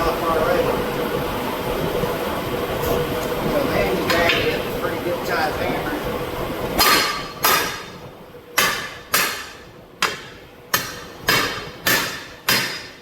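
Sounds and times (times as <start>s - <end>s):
hammer striking metal wheel rim: 6.8s - 8.0s, 8.6s - 13.0s.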